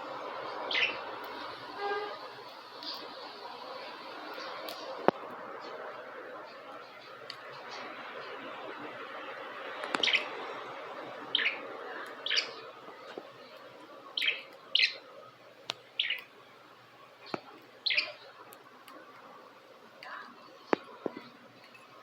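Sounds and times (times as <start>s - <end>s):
budgerigars chirping: 0.5s - 2.1s, 9.9s - 10.6s, 11.2s - 12.7s, 14.2s - 15.0s, 16.0s - 16.3s, 17.8s - 18.2s.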